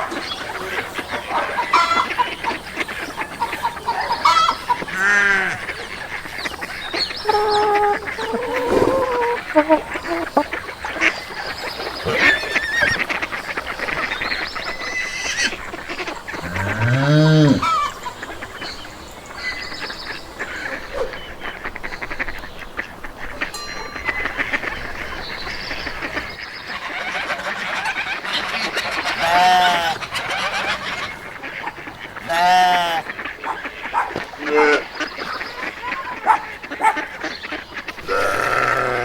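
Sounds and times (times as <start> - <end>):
poultry honking calls: 0.0 - 39.0
cow mooing: 7.2 - 10.4, 16.4 - 17.8, 38.0 - 39.0.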